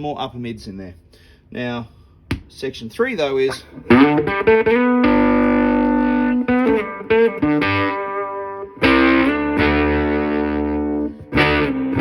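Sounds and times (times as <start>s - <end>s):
distorted electric guitar chords: 3.5s - 12.0s.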